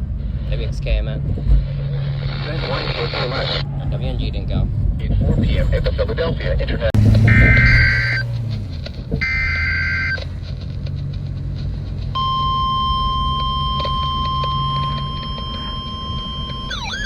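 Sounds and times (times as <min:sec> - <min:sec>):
steady warning alarm tone: 0:07.2 - 0:08.3, 0:09.2 - 0:10.3, 0:12.2 - 0:17.0
warbling data bursts: 0:12.2 - 0:17.0.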